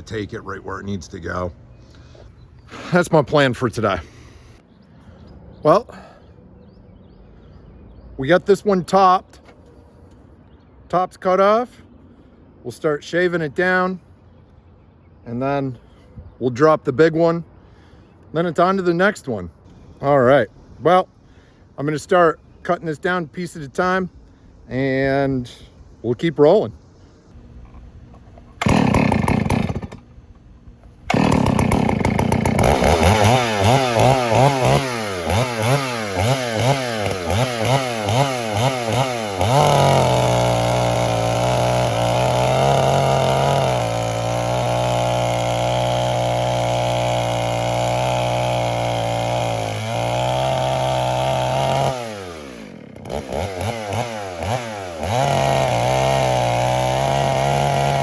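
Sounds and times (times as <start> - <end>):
chainsaw revving and cutting: 28.6 - 30.1, 31.0 - 58.0.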